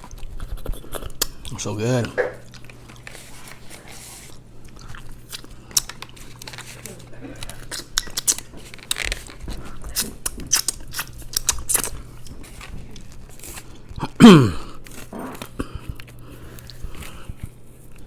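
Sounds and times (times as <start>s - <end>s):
person chewing food: 0.0s - 18.0s
short loud vocal sound: 14.1s - 14.7s.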